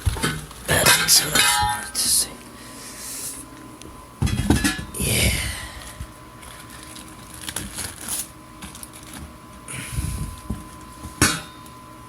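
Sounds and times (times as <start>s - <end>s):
rustling of packaging: 5.8s - 11.2s.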